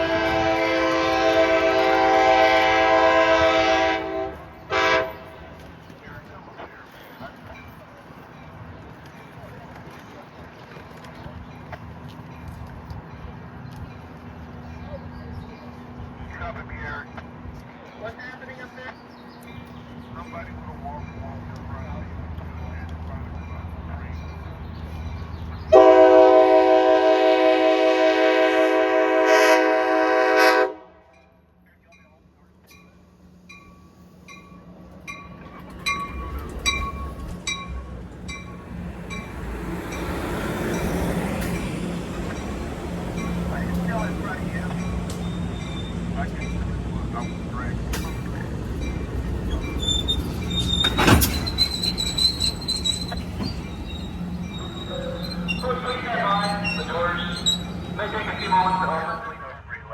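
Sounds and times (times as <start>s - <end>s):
locomotive air horn blast: 0.0s - 5.5s, 25.7s - 31.0s
train low hum: 0.0s - 59.9s
high squeals: 43.2s - 46.2s, 48.1s - 59.3s
loud clank: 50.7s - 52.0s.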